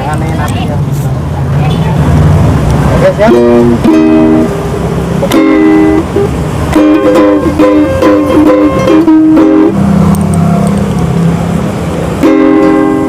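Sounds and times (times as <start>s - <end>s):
plucked string instrument chords: 3.1s - 13.0s.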